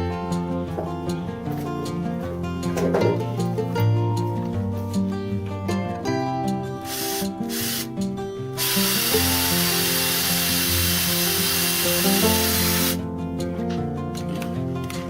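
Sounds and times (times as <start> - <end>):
plucked guitar music: 0.0 - 15.0
power tool hissing: 6.8 - 7.9, 8.6 - 13.0.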